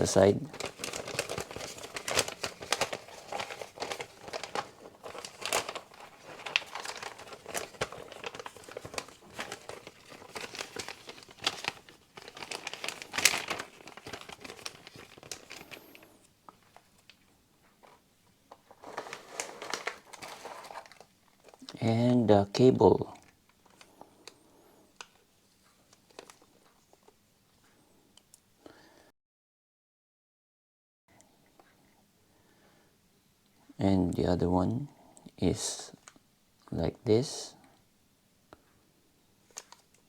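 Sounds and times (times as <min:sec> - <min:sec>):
packaging crinkling and rustling: 0:00.0 - 0:22.2, 0:23.1 - 0:27.2, 0:39.4 - 0:40.0.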